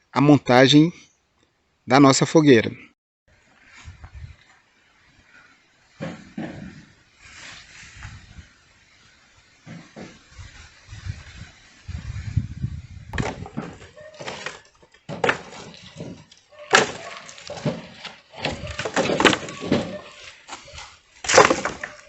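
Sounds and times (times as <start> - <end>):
branches knocking and snapping: 13.1 - 22.0.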